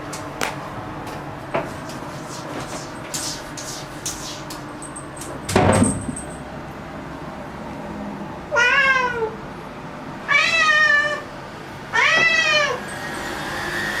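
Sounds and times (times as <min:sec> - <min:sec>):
cat meowing loudly: 0:08.5 - 0:09.4, 0:10.3 - 0:11.3, 0:11.9 - 0:12.8.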